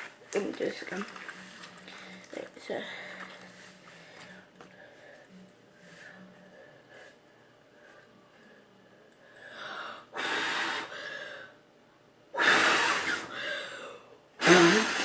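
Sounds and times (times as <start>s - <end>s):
person blowing hard: 10.2s - 11.0s, 12.4s - 13.4s, 14.4s - 15.0s.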